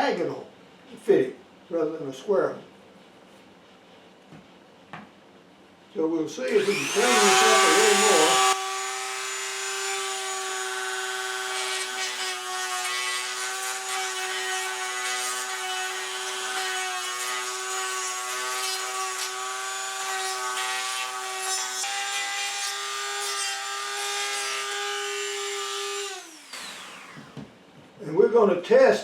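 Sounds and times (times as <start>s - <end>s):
rotary tool motor whine: 6.5s - 12.0s, 24.6s - 27.4s.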